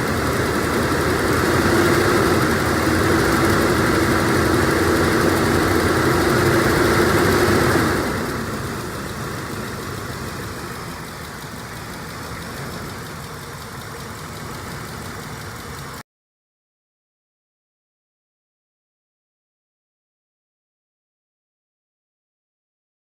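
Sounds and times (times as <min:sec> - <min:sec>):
car engine idling: 0:00.0 - 0:16.0.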